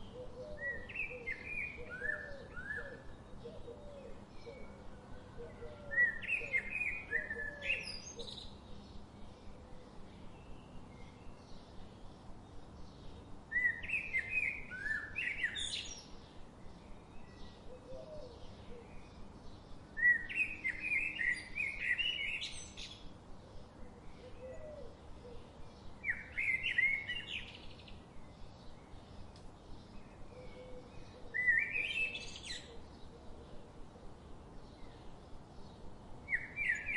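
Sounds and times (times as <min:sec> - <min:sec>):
faint background chirping: 0:00.0 - 0:36.9
songbird singing warbled phrases: 0:10.4 - 0:17.8, 0:18.4 - 0:23.2, 0:25.2 - 0:33.1, 0:34.3 - 0:36.9.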